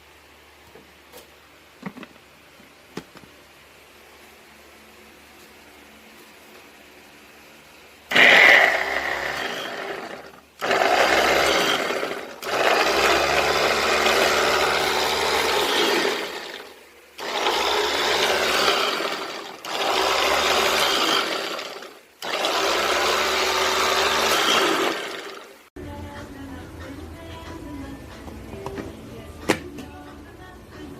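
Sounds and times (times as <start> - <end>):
electric food chopper motor: 8.1 - 25.6.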